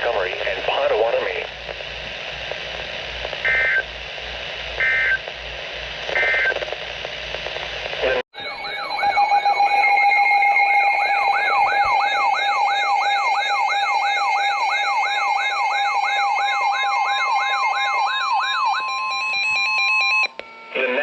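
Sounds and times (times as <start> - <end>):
electronic alert siren whoop: 8.4 - 20.3
steady high tones: 8.4 - 20.3.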